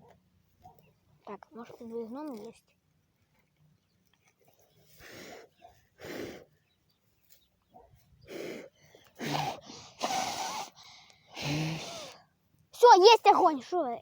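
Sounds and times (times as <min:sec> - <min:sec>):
person blowing breathy puffs: 0:04.9 - 0:06.6, 0:08.2 - 0:12.2.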